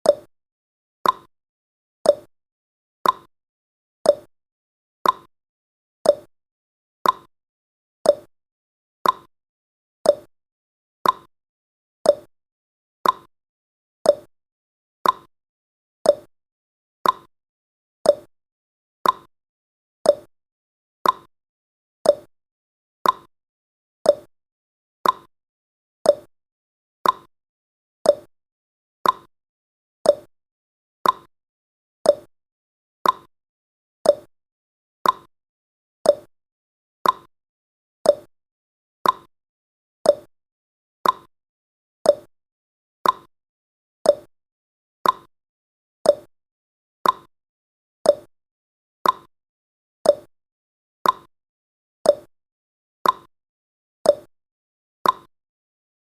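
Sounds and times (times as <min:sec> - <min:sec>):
countdown timer tick-tock: 0:00.0 - 0:00.3, 0:01.0 - 0:01.3, 0:02.0 - 0:02.3, 0:03.0 - 0:03.3, 0:04.0 - 0:04.3, 0:05.0 - 0:05.3, 0:06.0 - 0:06.3, 0:07.0 - 0:07.3, 0:08.0 - 0:08.3, 0:09.0 - 0:09.3, 0:10.0 - 0:10.3, 0:11.0 - 0:11.3, 0:12.0 - 0:12.3, 0:13.0 - 0:13.3, 0:14.0 - 0:14.3, 0:15.0 - 0:15.3, 0:16.0 - 0:16.3, 0:17.0 - 0:17.3, 0:18.0 - 0:18.3, 0:19.0 - 0:19.3, 0:20.0 - 0:20.3, 0:21.0 - 0:21.3, 0:22.0 - 0:22.3, 0:23.0 - 0:23.3, 0:24.0 - 0:24.3, 0:25.0 - 0:25.3, 0:26.0 - 0:26.4, 0:27.0 - 0:27.3, 0:28.0 - 0:28.3, 0:29.0 - 0:29.3, 0:30.0 - 0:30.3, 0:31.0 - 0:31.3, 0:32.0 - 0:32.4, 0:33.0 - 0:33.3, 0:34.0 - 0:34.4, 0:35.0 - 0:35.3, 0:36.0 - 0:36.4, 0:37.0 - 0:37.3, 0:38.0 - 0:38.4, 0:39.0 - 0:39.4, 0:40.0 - 0:40.4, 0:41.0 - 0:41.4, 0:42.0 - 0:42.4, 0:43.0 - 0:43.3, 0:44.0 - 0:44.4, 0:45.0 - 0:45.4, 0:46.0 - 0:46.4, 0:47.0 - 0:47.4, 0:48.0 - 0:48.4, 0:49.0 - 0:49.4, 0:50.0 - 0:50.4, 0:51.0 - 0:51.3, 0:52.0 - 0:52.4, 0:53.0 - 0:53.3, 0:54.0 - 0:54.4, 0:55.0 - 0:55.4.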